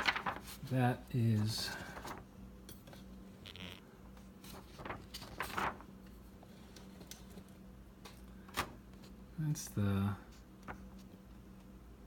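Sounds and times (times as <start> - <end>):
paper scraping and rustling: 0.0 - 2.3, 2.9 - 7.5.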